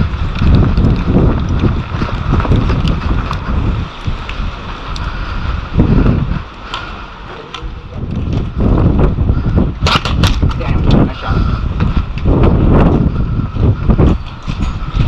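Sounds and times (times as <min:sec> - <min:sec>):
wind buffeting microphone: 0:00.0 - 0:15.0.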